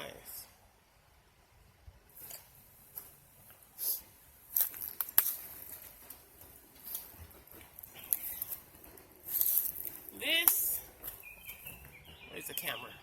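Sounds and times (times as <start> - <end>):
handling rustles: 4.5 - 11.9.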